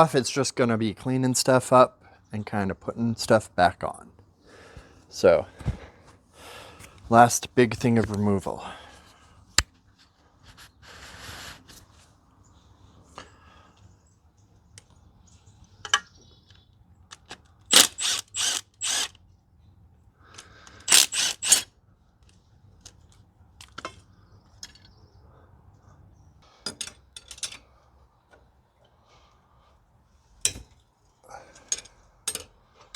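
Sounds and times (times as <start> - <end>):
power tool bursts: 17.7 - 19.1, 20.8 - 21.7.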